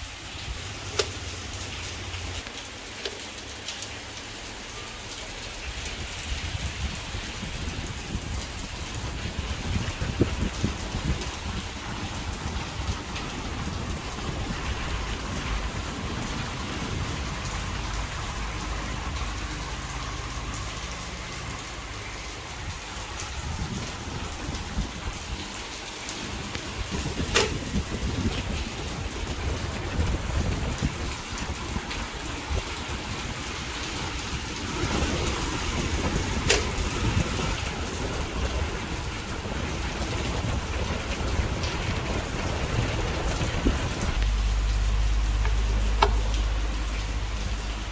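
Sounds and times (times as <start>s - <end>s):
electric fan air buffeting microphone: 0.0s - 47.9s
sharp click: 27.3s - 27.7s, 36.5s - 36.7s.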